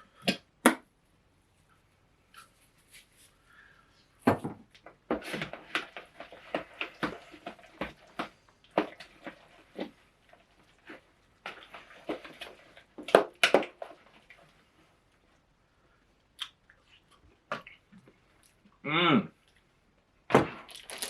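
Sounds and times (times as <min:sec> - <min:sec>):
utensil stirring wet mixture in bowl: 0:05.5 - 0:14.7.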